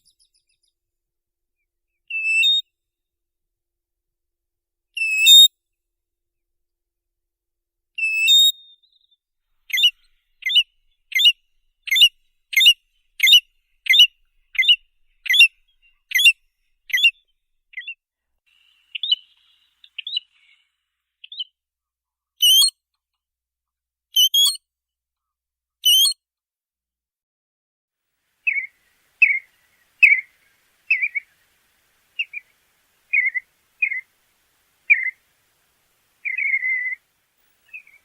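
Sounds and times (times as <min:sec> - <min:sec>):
shorebird whistled calls: 0:09.7 - 0:17.2, 0:28.4 - 0:38.0.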